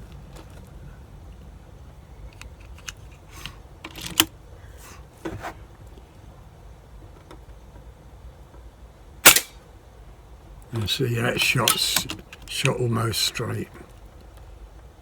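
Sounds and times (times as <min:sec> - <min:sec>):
air rifle handling clicks: 0:02.4 - 0:04.3, 0:09.2 - 0:09.5
sharp clack: 0:09.3 - 0:09.5.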